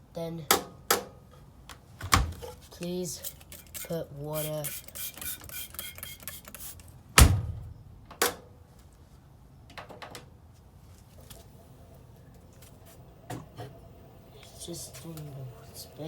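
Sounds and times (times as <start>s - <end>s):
washing machine door banging: 2.0s - 2.5s, 7.2s - 8.4s.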